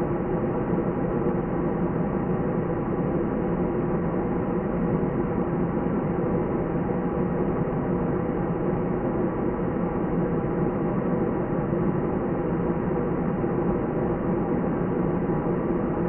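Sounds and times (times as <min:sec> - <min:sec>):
airliner cabin engine drone: 0:00.0 - 0:16.0.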